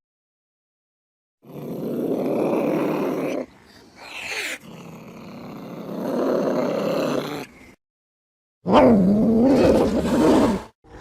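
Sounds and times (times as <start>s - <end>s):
cat growling: 1.4s - 7.7s.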